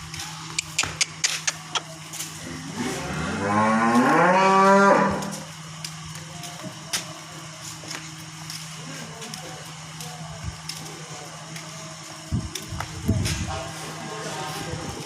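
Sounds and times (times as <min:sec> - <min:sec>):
cow mooing: 0:02.4 - 0:05.5.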